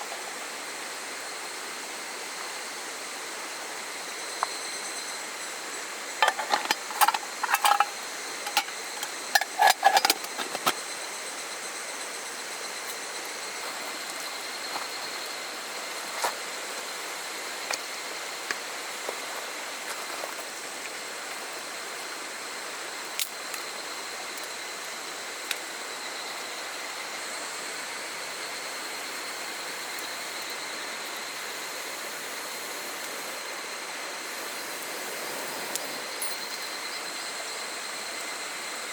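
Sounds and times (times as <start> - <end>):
metallic clinks and clatter: 6.2 - 10.7.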